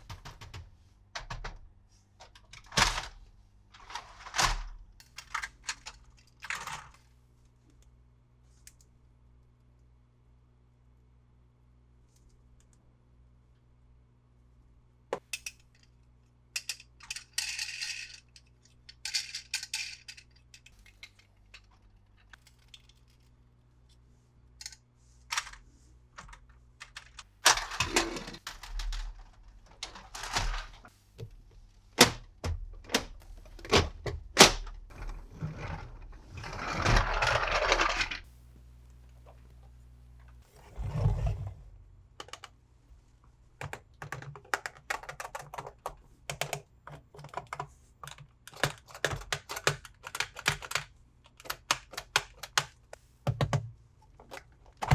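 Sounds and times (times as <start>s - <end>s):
plastic toys clicking and rattling: 3.8s - 7.0s, 15.3s - 23.3s, 24.6s - 25.6s, 26.2s - 30.9s, 32.8s - 38.2s, 43.6s - 54.9s.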